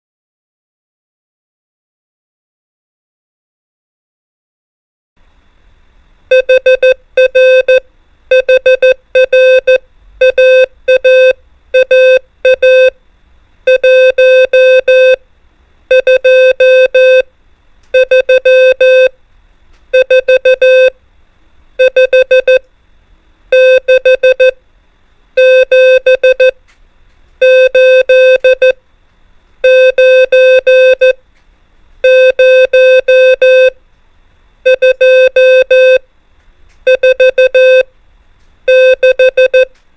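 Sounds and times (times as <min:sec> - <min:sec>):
morse code beeps: 0:06.3 - 0:13.0, 0:13.7 - 0:15.2, 0:15.9 - 0:17.3, 0:18.0 - 0:19.1, 0:19.9 - 0:21.0, 0:21.8 - 0:22.6, 0:23.5 - 0:24.6, 0:25.4 - 0:26.6, 0:27.4 - 0:28.8, 0:29.6 - 0:31.2, 0:32.0 - 0:33.8, 0:34.7 - 0:36.0, 0:36.9 - 0:37.9, 0:38.7 - 0:39.8.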